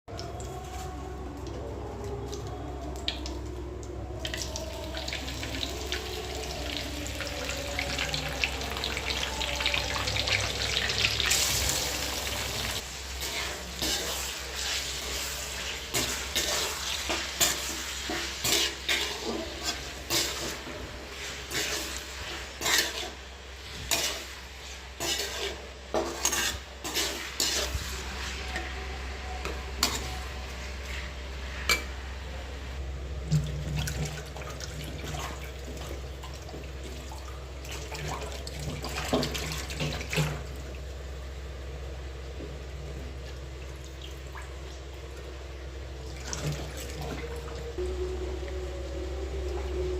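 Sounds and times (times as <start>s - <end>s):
chicken sizzling in a pan: 5.2s - 29.2s
spatula scraping metal pan: 22.4s - 23.2s, 25.0s - 28.6s.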